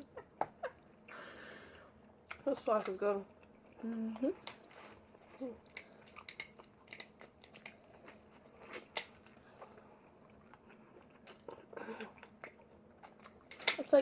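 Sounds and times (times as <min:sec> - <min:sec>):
chewing: 0:02.2 - 0:13.7
crab shells cracking: 0:05.6 - 0:09.8.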